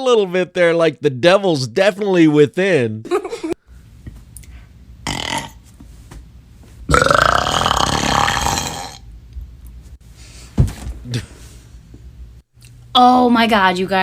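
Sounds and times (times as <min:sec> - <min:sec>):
person burping: 0:05.0 - 0:05.6, 0:06.9 - 0:09.0.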